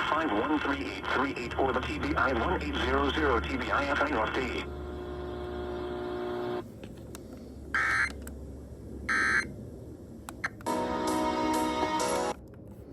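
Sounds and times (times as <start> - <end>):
radio music: 0.0 - 6.6
harsh buzzy data tones: 0.1 - 6.6, 9.1 - 9.5.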